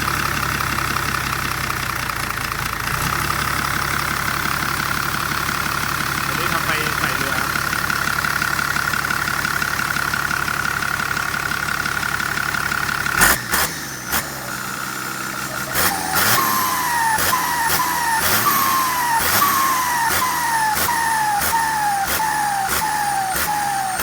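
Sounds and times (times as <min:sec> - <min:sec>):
engine blips: 0:00.0 - 0:24.0
turbocharged engine idling: 0:00.0 - 0:24.0
turbo whine: 0:13.0 - 0:24.0
falling turbo whistle: 0:15.7 - 0:24.0.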